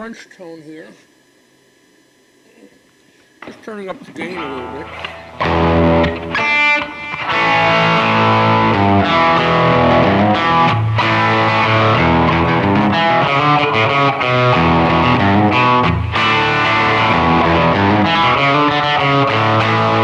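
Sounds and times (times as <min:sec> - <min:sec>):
electric guitar strummed chords: 0:04.1 - 0:20.0.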